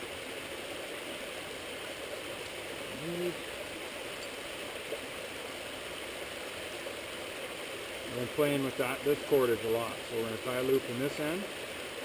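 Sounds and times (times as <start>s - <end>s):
small creek rushing: 0.0s - 12.0s
short voiced hum or grunt: 2.9s - 3.5s.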